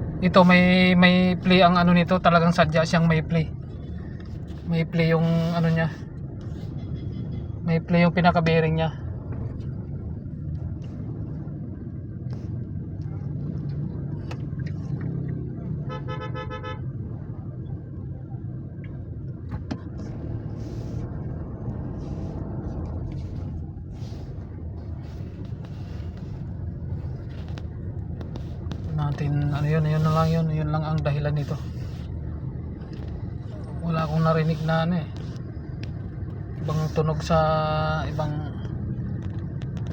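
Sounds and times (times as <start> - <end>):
car engine running: 0.0 - 39.9
road noise: 0.0 - 39.9
car horn: 15.8 - 17.0.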